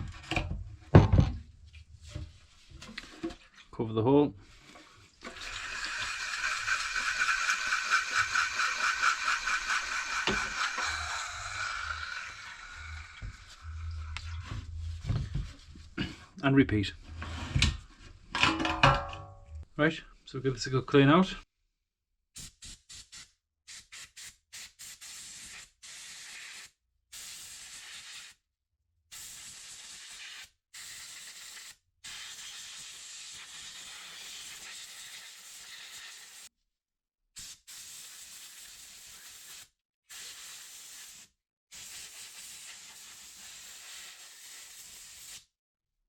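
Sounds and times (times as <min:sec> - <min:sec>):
hissing jets of spray: 0:05.7 - 0:14.2.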